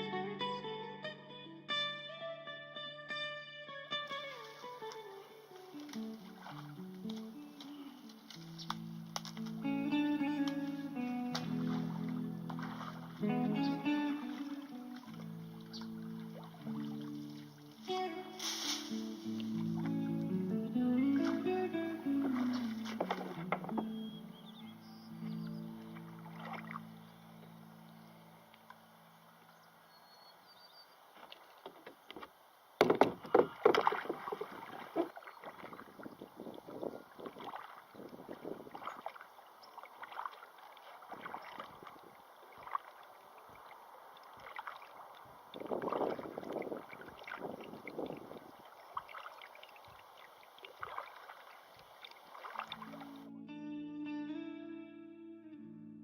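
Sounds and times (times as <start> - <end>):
kayak paddle splashing water: 4.1 - 9.7, 10.3 - 27.2, 31.1 - 53.3.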